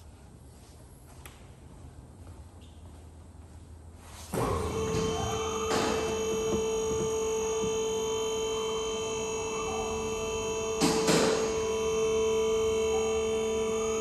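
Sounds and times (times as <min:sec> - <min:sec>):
electrical hum: 0:01.2 - 0:14.0
sharp knocks: 0:04.4 - 0:07.9.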